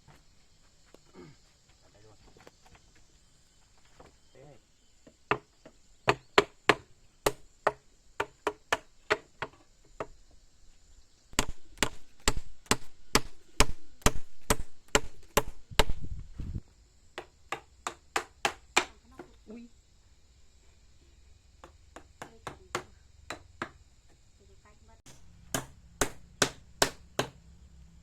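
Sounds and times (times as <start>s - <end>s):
blade chopping wood: 11.4s - 16.1s, 25.1s - 27.4s.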